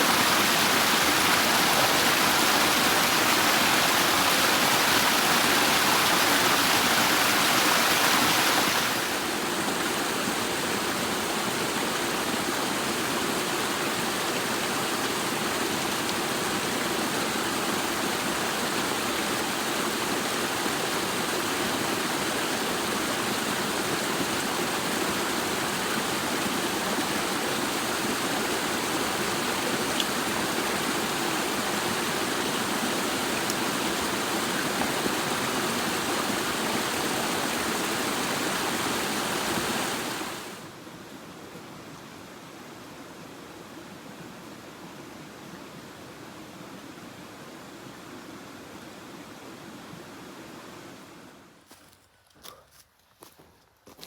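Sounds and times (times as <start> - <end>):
river water rushing: 0.0 - 41.4.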